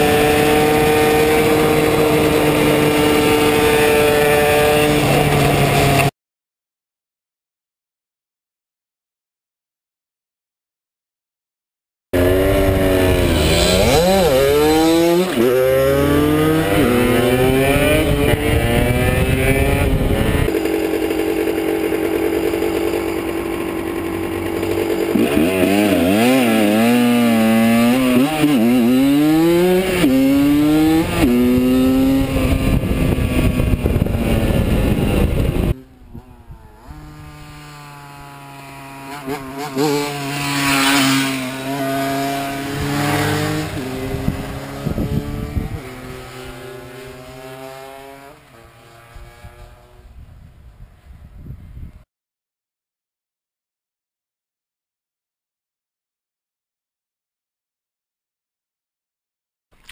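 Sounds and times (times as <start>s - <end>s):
motorcycle engine revving: 0.0s - 6.1s, 12.2s - 51.4s.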